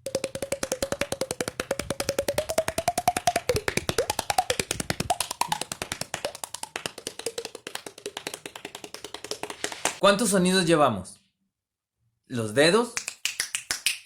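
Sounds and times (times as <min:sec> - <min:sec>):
finger taps on cheeks popping: 0:00.0 - 0:10.0.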